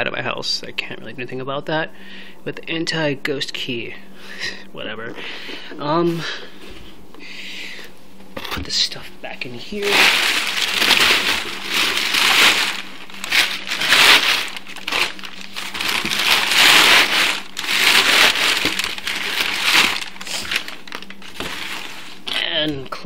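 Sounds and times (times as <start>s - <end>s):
packing paper crumpling: 9.6s - 22.5s.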